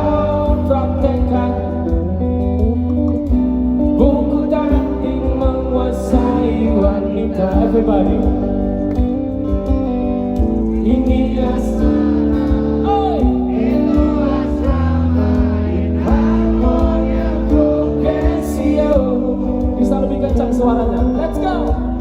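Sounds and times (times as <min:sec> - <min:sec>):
live band playing: 0:00.0 - 0:22.0
person singing: 0:10.7 - 0:22.0.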